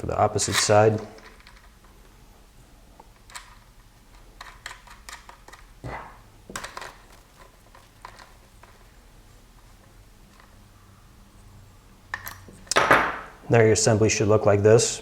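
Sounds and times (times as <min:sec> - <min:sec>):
plastic parts clicking and knocking: 0:00.0 - 0:02.2, 0:03.0 - 0:10.6.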